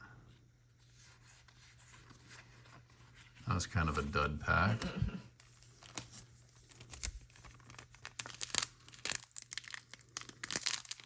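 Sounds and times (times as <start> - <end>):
wrapper crinkling and tearing: 5.4 - 11.0.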